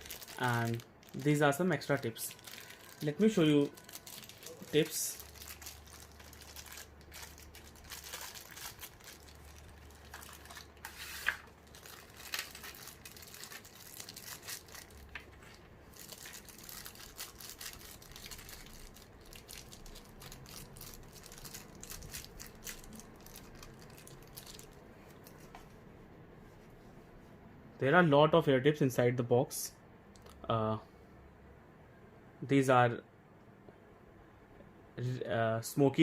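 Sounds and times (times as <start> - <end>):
packaging crinkling: 0.0 - 25.5.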